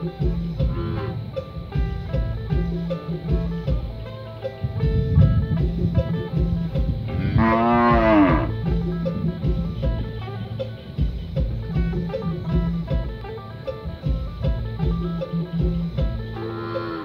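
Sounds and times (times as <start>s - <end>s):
guitar music: 0.0s - 17.0s
cow mooing: 0.6s - 1.2s, 7.1s - 8.6s, 16.3s - 17.0s.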